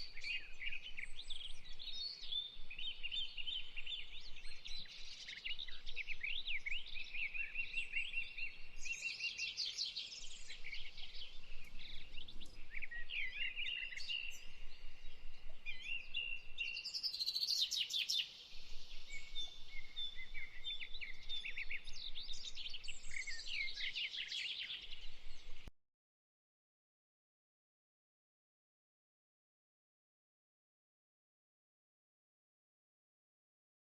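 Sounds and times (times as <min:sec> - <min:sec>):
birds chirping: 0:00.0 - 0:25.7.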